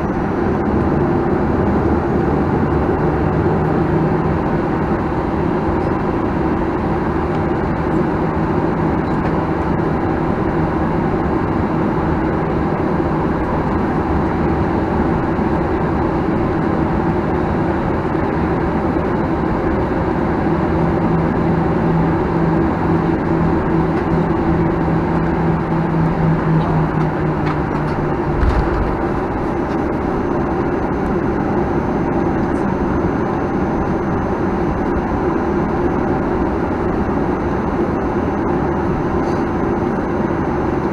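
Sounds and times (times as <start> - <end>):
airplane engines rumbling: 0.0 - 40.9
low hum: 20.4 - 37.0
thump: 28.4 - 29.0.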